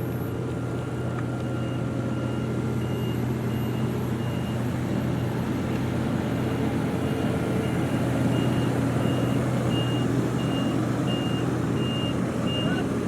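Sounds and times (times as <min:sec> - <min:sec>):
diesel machinery running: 0:00.0 - 0:13.0
reversing alarm beeping: 0:00.7 - 0:04.6, 0:07.1 - 0:12.8.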